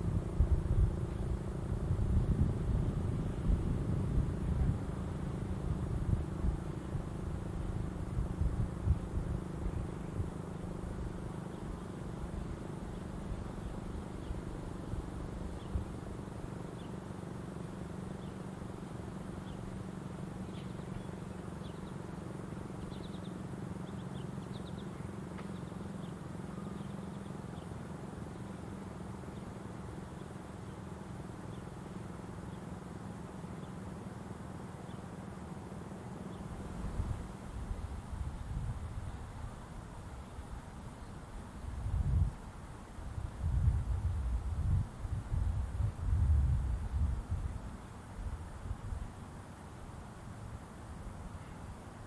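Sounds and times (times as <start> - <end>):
faint bird chirps: 19.3 - 22.1, 22.7 - 32.8.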